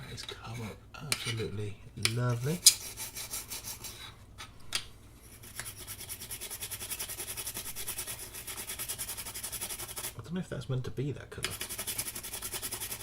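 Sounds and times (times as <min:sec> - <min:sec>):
brisk scrubbing: 0:01.1 - 0:04.2, 0:05.2 - 0:10.2, 0:11.5 - 0:13.0.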